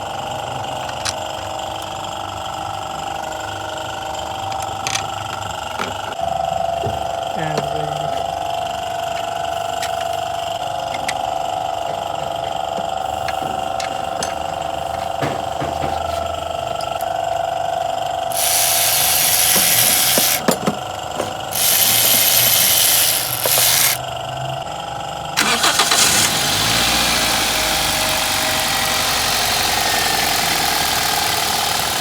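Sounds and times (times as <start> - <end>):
power tool hissing bursts: 18.3 - 20.5, 21.5 - 24.0
tool clicks and ratchet ticks: 18.3 - 20.6, 21.5 - 24.0.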